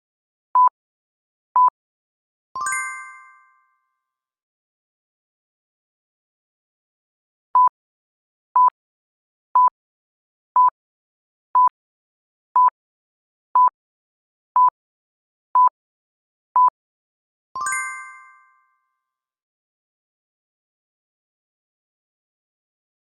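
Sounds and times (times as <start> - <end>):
bell-like chime: 2.6 - 4.0, 17.6 - 18.9.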